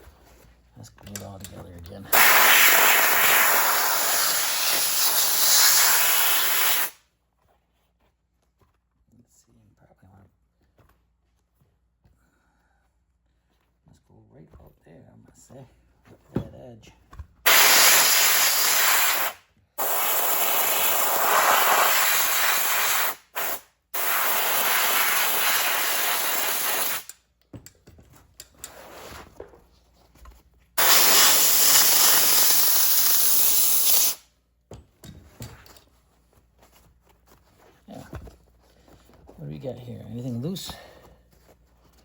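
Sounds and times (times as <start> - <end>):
aerosol can spraying: 2.1 - 7.0, 17.5 - 27.1, 30.8 - 34.2.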